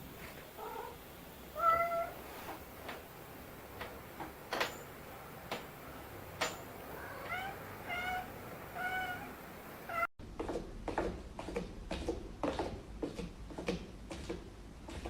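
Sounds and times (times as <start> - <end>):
cat meowing: 1.6 - 2.2, 6.9 - 10.1.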